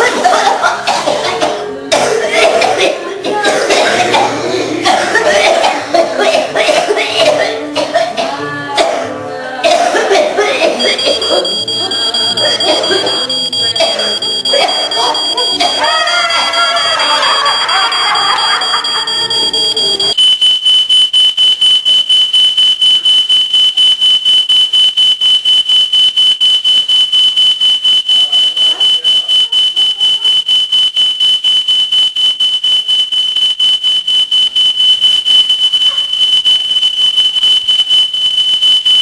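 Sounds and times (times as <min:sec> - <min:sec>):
smoke alarm beeping: 0:10.8 - 0:39.0.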